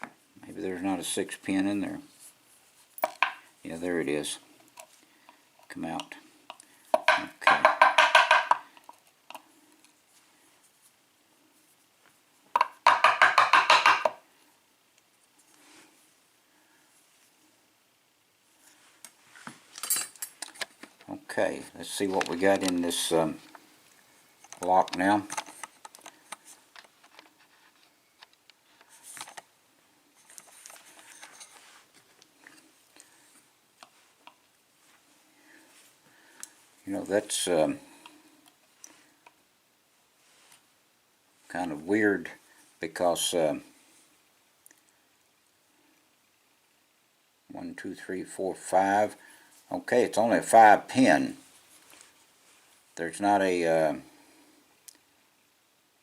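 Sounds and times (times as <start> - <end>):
faint metal clicks and taps: 4.7 - 10.0.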